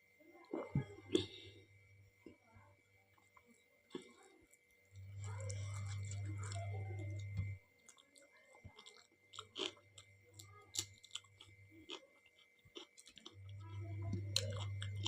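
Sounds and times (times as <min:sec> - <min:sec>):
mouth chewing clicks and smacks: 0:07.3 - 0:15.0.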